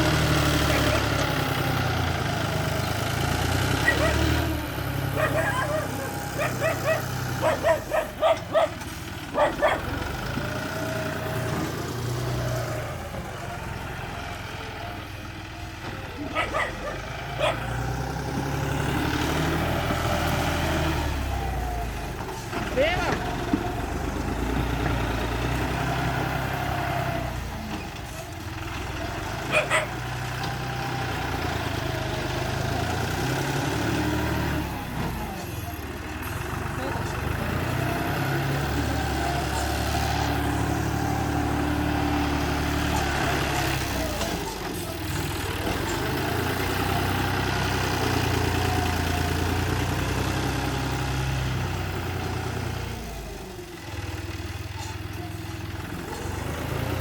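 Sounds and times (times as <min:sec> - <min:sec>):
bulldozer diesel engine droning: 0:00.0 - 0:57.0
dog barking: 0:03.8 - 0:04.4, 0:05.1 - 0:10.0, 0:16.2 - 0:17.7, 0:29.5 - 0:30.1.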